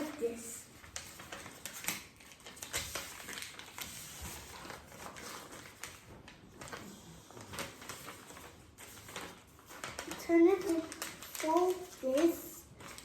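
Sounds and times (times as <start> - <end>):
paper being folded and creased: 0.0 - 13.0.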